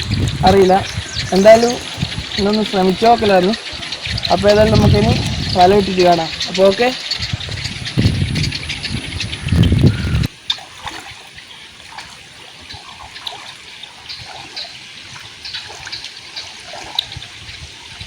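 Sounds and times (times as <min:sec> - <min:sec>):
water trickling and splashing: 0:00.0 - 0:18.0
loud low rumble: 0:04.1 - 0:10.3.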